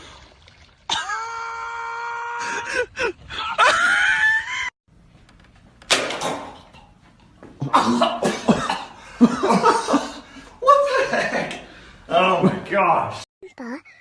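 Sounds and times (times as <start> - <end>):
person screaming: 0.9 - 2.9.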